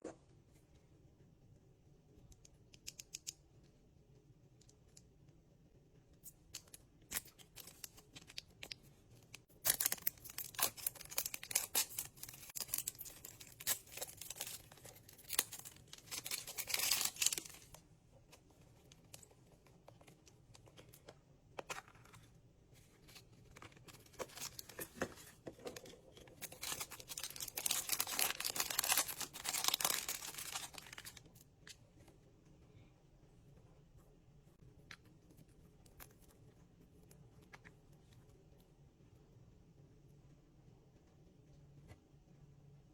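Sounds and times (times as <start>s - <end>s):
plastic wrapping crinkling: 9.6s - 17.8s, 23.0s - 31.3s.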